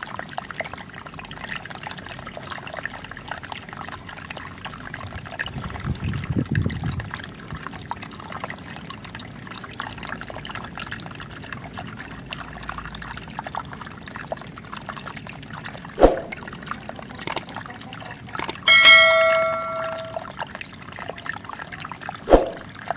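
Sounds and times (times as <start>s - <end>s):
water trickling from waterfall: 0.0s - 22.9s
clear bell-like ring: 18.4s - 20.3s.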